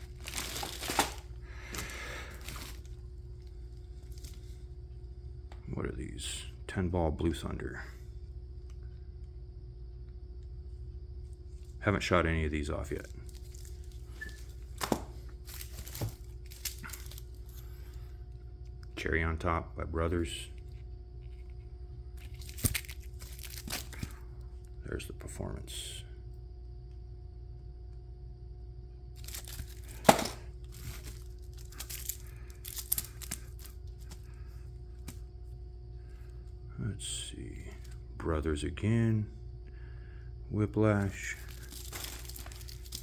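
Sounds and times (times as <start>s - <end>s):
packaging clicks: 0.0s - 3.0s, 13.3s - 17.4s, 29.2s - 34.2s, 41.3s - 43.0s
packaging rustling: 0.0s - 4.5s, 13.2s - 18.0s, 22.2s - 24.2s, 29.2s - 34.3s, 41.3s - 43.0s
low hum: 25.9s - 43.0s
sharp knock of object set down: 30.0s - 30.4s.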